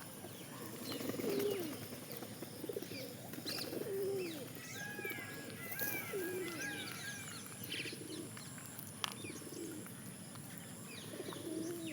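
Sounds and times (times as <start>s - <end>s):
bird cooing: 0.5s - 1.9s, 2.6s - 8.4s, 9.3s - 9.8s, 11.0s - 11.9s.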